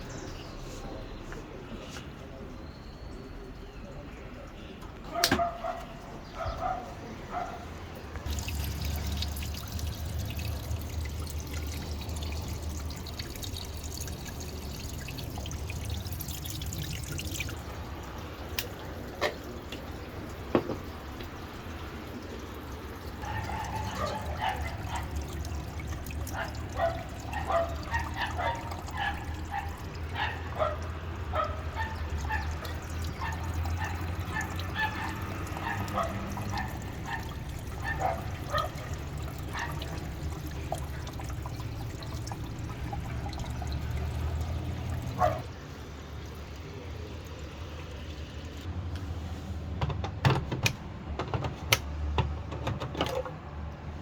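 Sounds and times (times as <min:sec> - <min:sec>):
washing machine drain pump humming: 0:08.3 - 0:48.7.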